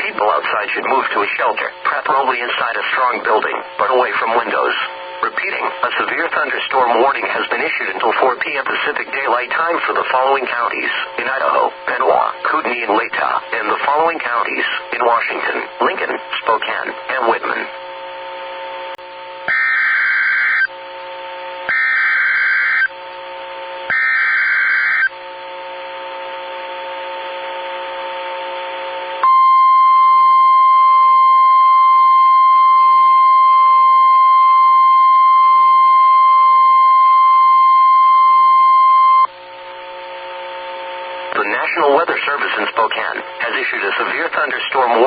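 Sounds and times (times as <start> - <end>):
warbling digital header bursts: 19.5 - 20.7, 23.9 - 25.1
steady warning alarm tone: 19.5 - 28.0, 29.0 - 43.8.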